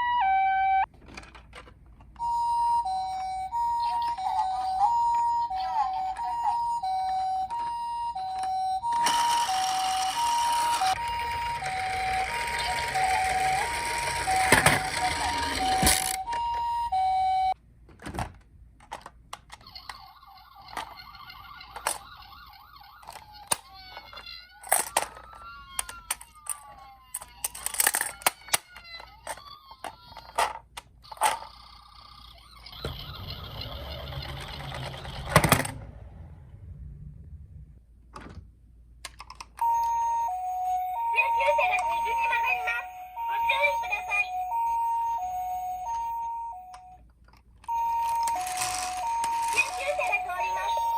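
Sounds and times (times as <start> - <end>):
toy two-tone siren: 0.0 - 0.9, 2.2 - 17.6, 19.6 - 30.4, 31.1 - 35.8, 39.6 - 47.0, 47.6 - 50.9
toy cars rattling down plastic slope: 8.9 - 16.2, 23.0 - 31.6, 32.6 - 35.8, 48.0 - 50.9
loud clatter of toy cars: 11.7 - 16.2, 23.1 - 31.5, 32.7 - 35.8, 48.1 - 50.0.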